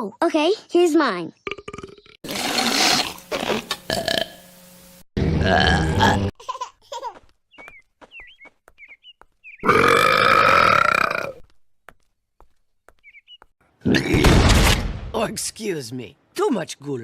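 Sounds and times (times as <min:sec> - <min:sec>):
cartoon character belching: 0:01.5 - 0:04.4, 0:05.2 - 0:06.3, 0:09.6 - 0:11.4, 0:13.8 - 0:14.3.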